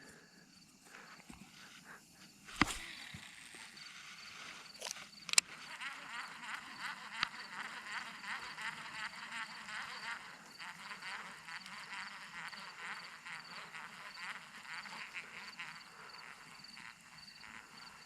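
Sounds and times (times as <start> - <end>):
insect trilling: 0.0 - 18.0
sharp clicks: 4.8 - 5.6.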